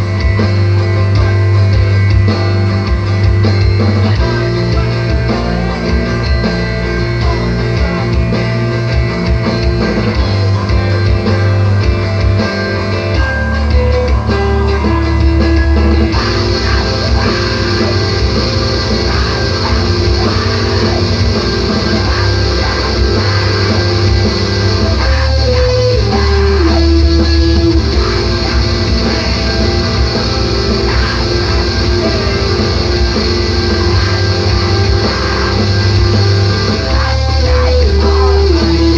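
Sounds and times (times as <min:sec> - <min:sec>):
bass guitar: 0:00.0 - 0:38.9
descending guitar line: 0:00.0 - 0:38.9
distorted electric guitars: 0:00.0 - 0:38.9
drums playing: 0:00.0 - 0:38.9.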